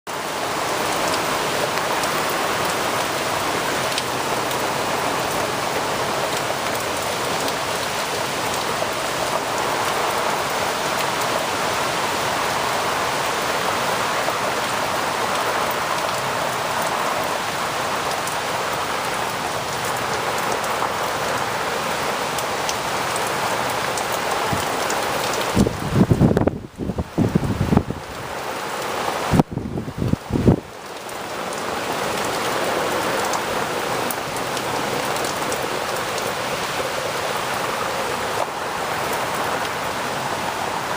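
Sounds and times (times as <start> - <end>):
heavy rain falling: 0.1 - 40.9
wind gust on microphone: 25.4 - 28.4, 29.2 - 30.7.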